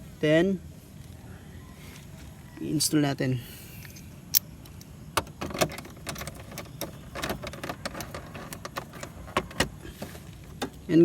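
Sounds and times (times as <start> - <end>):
allen key turning metal bolt: 5.2 - 10.9.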